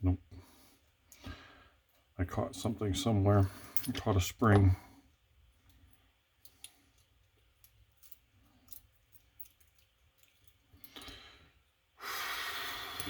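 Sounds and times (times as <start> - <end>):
small metal clicks: 5.6 - 11.2.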